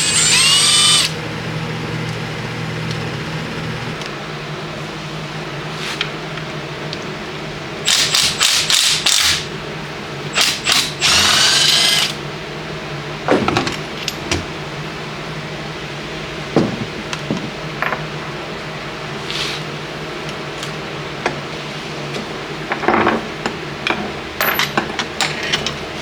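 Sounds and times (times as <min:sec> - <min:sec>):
handheld power tool running: 0:00.0 - 0:04.0, 0:07.9 - 0:09.5, 0:10.4 - 0:12.2
steady hum: 0:00.0 - 0:07.9
knocks: 0:16.5 - 0:18.0.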